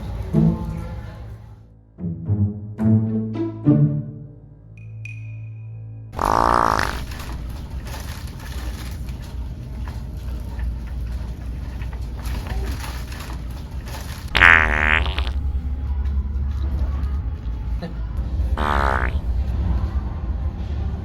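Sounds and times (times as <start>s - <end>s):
electronic fake fart: 6.2s - 7.4s, 14.3s - 15.8s, 18.6s - 19.4s.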